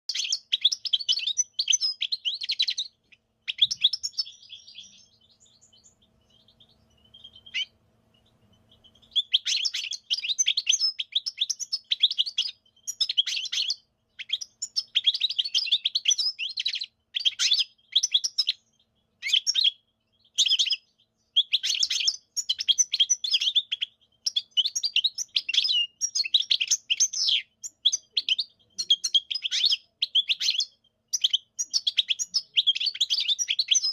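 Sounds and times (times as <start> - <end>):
bird twittering song: 0.0 - 33.9
faint low hum: 1.0 - 15.7.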